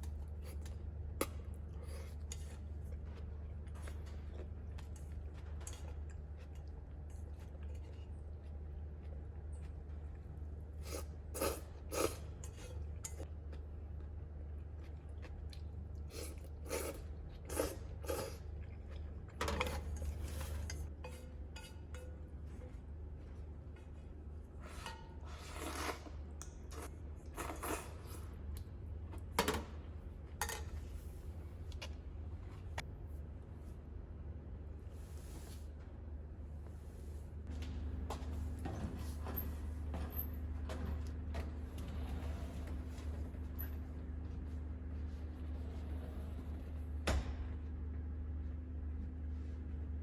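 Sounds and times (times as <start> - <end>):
steady low hum: 0.0 - 50.0
utensils clinking and scraping dish: 19.4 - 22.3.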